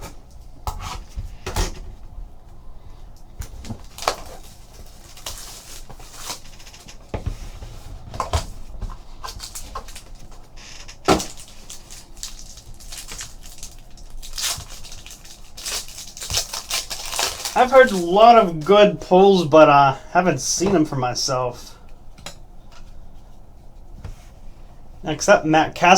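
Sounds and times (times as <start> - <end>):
cards and packaging handled: 3.6 - 7.4, 8.2 - 18.6.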